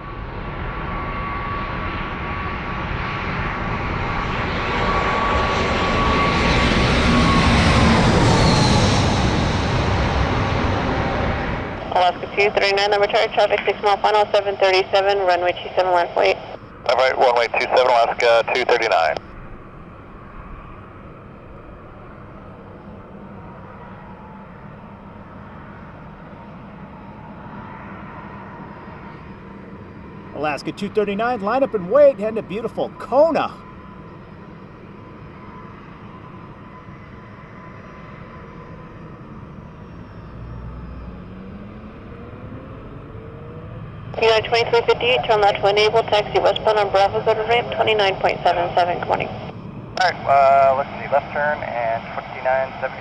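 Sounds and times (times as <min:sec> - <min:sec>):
jet airliner engines passing: 0:00.0 - 0:53.0.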